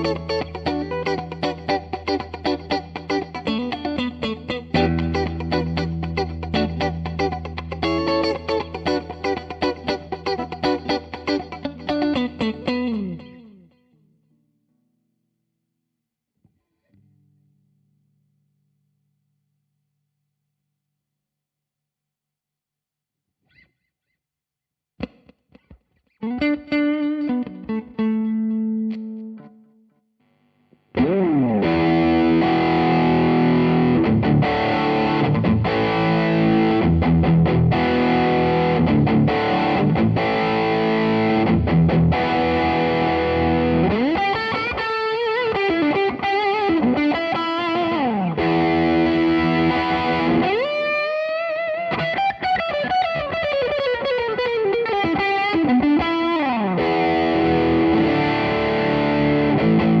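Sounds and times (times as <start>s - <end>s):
electric guitar ringing chords: 0.0s - 14.2s, 26.2s - 29.6s, 31.0s - 60.0s.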